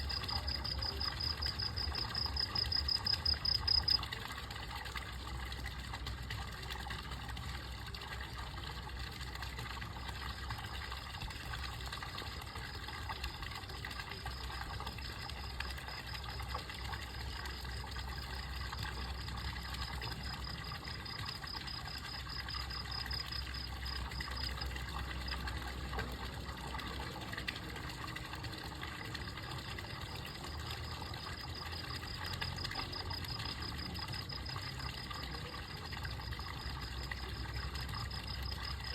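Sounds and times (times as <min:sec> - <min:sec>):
insect trilling: 0:00.0 - 0:04.0, 0:18.2 - 0:25.4.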